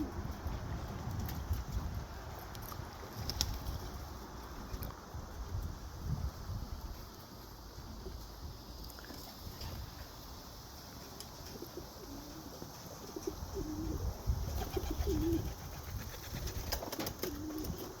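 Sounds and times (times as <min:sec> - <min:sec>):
pigeon cooing: 0:11.5 - 0:15.8, 0:17.0 - 0:18.0.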